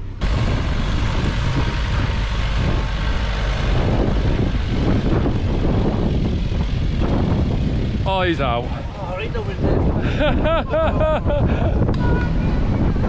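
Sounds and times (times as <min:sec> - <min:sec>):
van engine revving: 0:00.0 - 0:09.0
wind buffeting microphone: 0:00.0 - 0:13.0.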